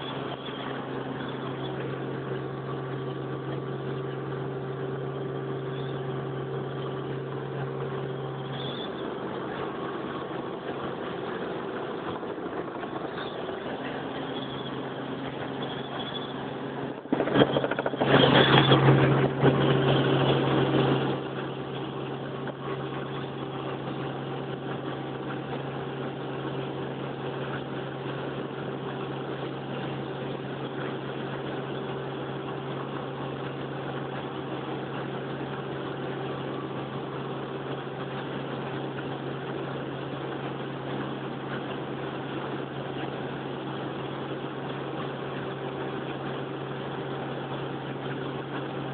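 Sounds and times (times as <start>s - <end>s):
helicopter engine and rotor: 0.0s - 34.4s.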